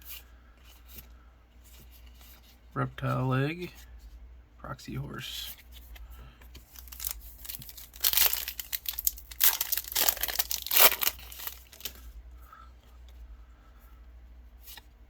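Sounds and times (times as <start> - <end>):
handling of a card pack: 5.5 - 12.2
foil wrapper tearing: 6.8 - 12.0.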